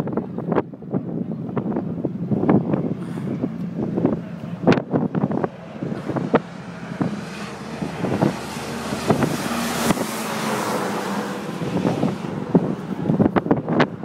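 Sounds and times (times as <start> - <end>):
road traffic passing: 0.0 - 14.0
wind buffeting microphone: 0.0 - 14.0.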